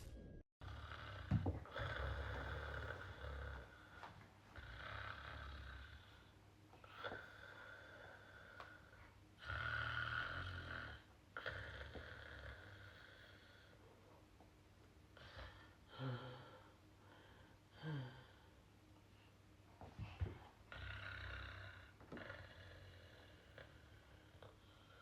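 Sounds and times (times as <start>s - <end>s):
woman snoring softly: 0.6s - 13.8s, 15.2s - 16.8s, 17.7s - 18.5s, 20.7s - 25.0s.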